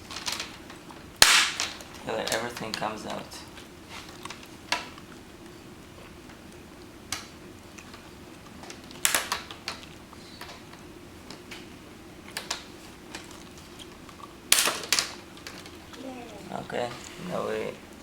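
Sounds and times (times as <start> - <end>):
plastic clips snapping: 0.0 - 3.2, 8.6 - 11.7, 14.5 - 15.8.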